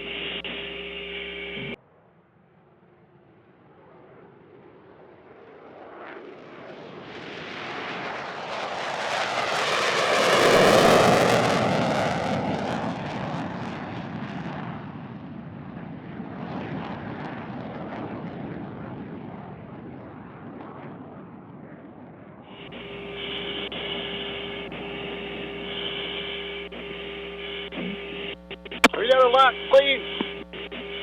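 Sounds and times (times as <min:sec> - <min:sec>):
jet aircraft flying past: 0:03.2 - 0:27.5.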